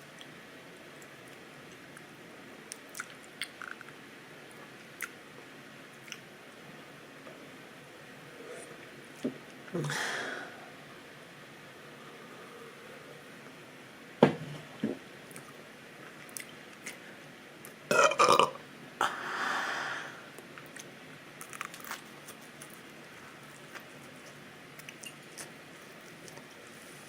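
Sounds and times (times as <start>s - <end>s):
person burping: 17.9s - 18.6s
open-mouthed chewing: 20.6s - 27.0s.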